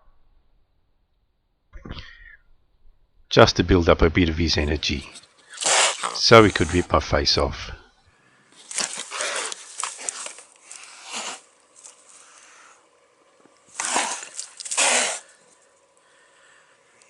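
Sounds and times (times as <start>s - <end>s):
cat hissing and spitting: 5.4s - 6.8s, 8.8s - 11.5s, 13.7s - 15.4s.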